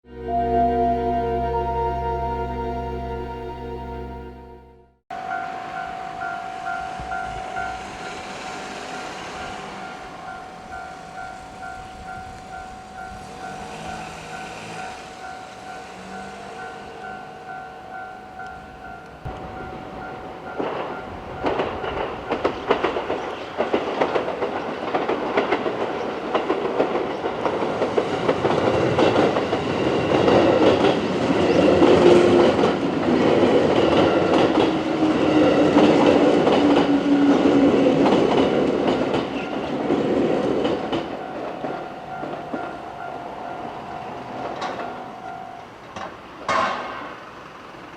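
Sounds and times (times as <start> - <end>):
train droning tone: 0.0 - 46.0
crossing warning bell: 0.1 - 46.4
train wheels clattering: 19.4 - 42.8.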